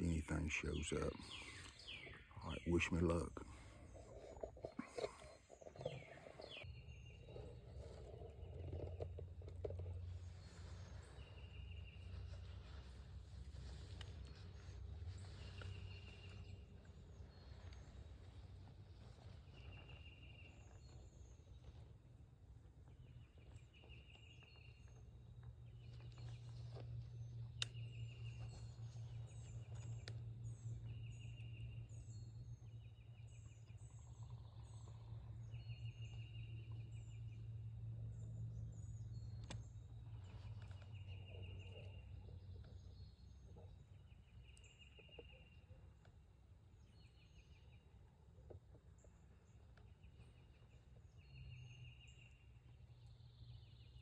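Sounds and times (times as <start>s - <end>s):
songbird trilling: 0.0s - 3.5s
birds chirping: 0.0s - 9.0s, 22.8s - 45.8s
low steady rumble: 0.0s - 44.9s.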